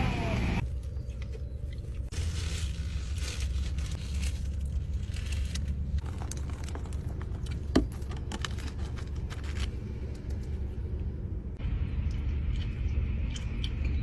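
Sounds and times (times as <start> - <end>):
car engine idling: 0.0 - 0.6
small clicks and rustles: 1.1 - 10.7.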